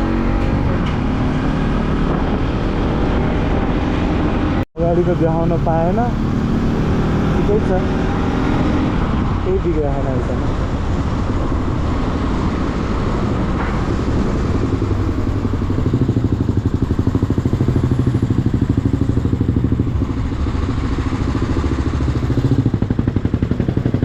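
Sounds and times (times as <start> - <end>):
motorcycle engine running: 14.2 - 24.0.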